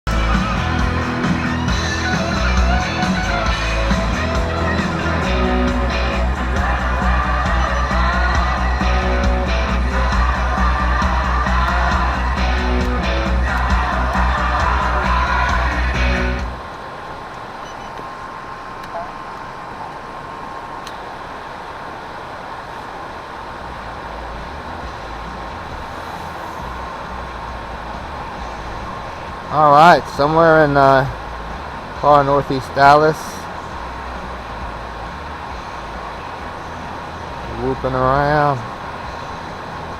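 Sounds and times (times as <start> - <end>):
rock music with guitar: 0.1 - 16.6
low rumble: 0.1 - 16.7, 23.6 - 29.6.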